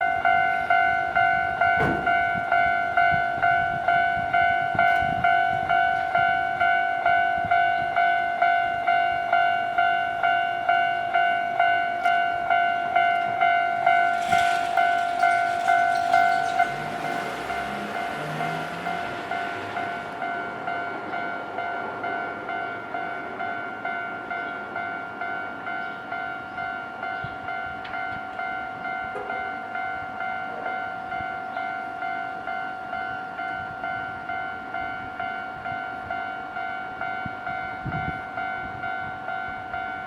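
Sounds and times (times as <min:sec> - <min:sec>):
level-crossing warning bell: 0:00.0 - 0:40.0
train rushing past: 0:13.9 - 0:23.7.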